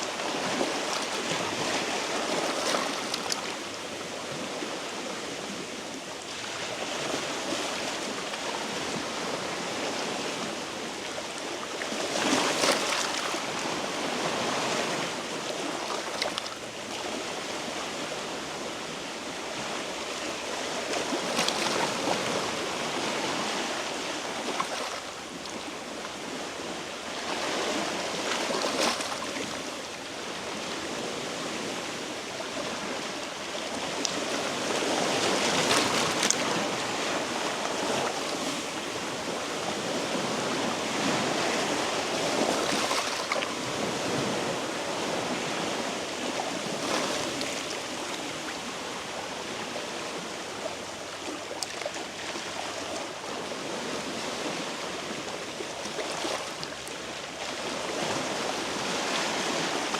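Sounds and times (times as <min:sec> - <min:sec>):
sea waves splashing on rocks: 0:40.9 - 0:44.4.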